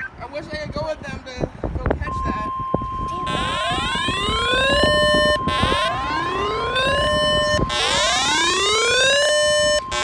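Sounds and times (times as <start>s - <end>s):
electronic siren rising in pitch: 2.1s - 10.0s
steady alarm tone: 2.1s - 10.0s.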